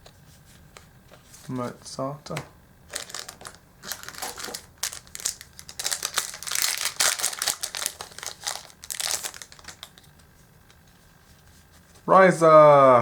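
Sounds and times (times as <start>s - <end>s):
foil wrapper crinkling: 2.9s - 10.8s.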